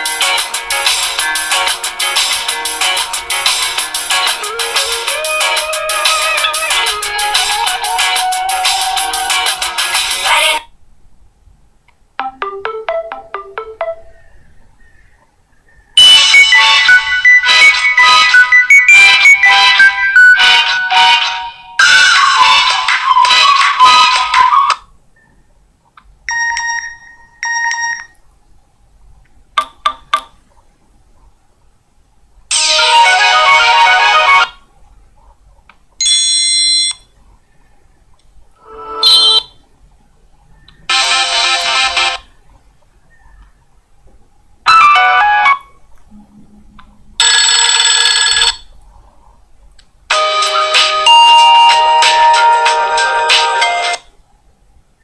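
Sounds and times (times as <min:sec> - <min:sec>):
melodic ringtone: 0:12.2 - 0:14.2, 0:16.0 - 0:22.6, 0:26.3 - 0:28.2, 0:32.5 - 0:34.6, 0:38.6 - 0:39.5, 0:47.2 - 0:48.6, 0:50.1 - 0:54.0
bell-like ringtone: 0:26.3 - 0:28.1, 0:47.2 - 0:48.6, 0:50.1 - 0:52.7.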